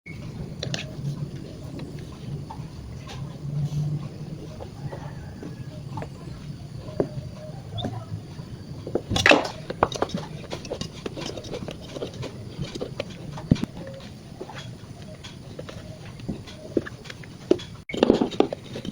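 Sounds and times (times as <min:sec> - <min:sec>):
kitchen utensils clicking and tapping: 0:00.1 - 0:18.9
utensils clattering: 0:00.1 - 0:18.9.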